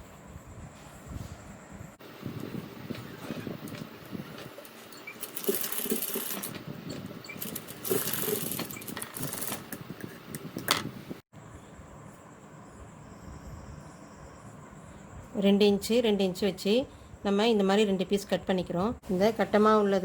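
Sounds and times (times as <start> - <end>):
sewing machine stitching: 3.1 - 9.9.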